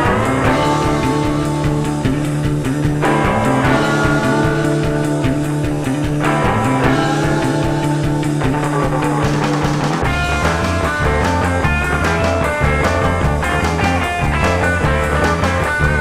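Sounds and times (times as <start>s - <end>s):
rock music with guitar: 0.0s - 16.0s.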